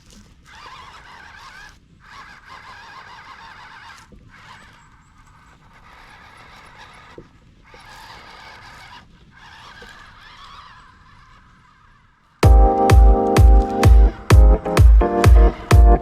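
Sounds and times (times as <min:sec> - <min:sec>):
small electric motor whining: 0:00.0 - 0:12.4.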